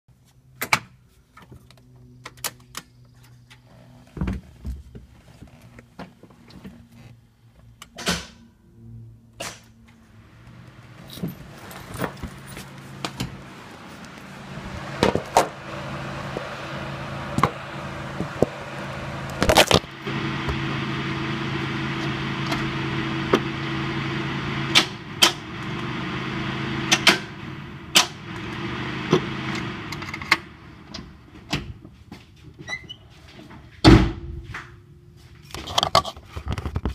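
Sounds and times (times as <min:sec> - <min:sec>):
car starter motor humming: 0:10.3 - 0:31.2.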